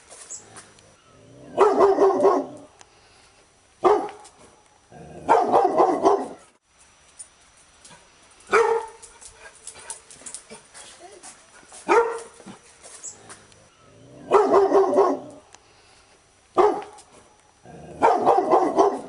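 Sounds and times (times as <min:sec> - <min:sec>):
dog barking: 0:01.5 - 0:02.7, 0:03.8 - 0:04.2, 0:05.2 - 0:06.5, 0:08.5 - 0:09.0, 0:11.8 - 0:12.4, 0:14.2 - 0:15.4, 0:16.6 - 0:17.0, 0:18.0 - 0:19.0.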